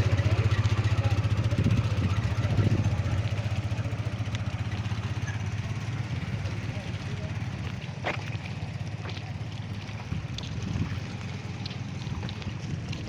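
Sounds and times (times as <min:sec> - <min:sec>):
small engine running: 0:00.0 - 0:13.0.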